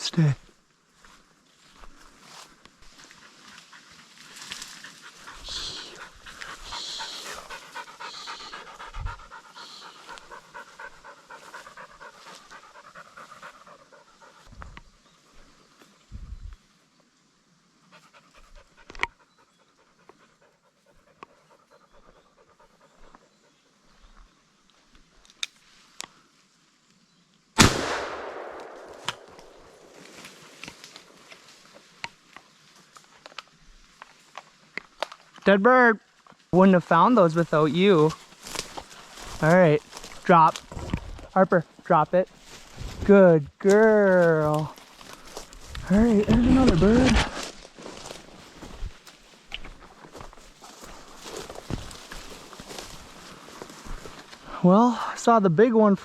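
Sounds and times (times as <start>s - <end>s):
dog panting fast: 3.1s - 14.8s, 17.9s - 23.6s
shotgun shot echoing: 27.6s - 30.0s.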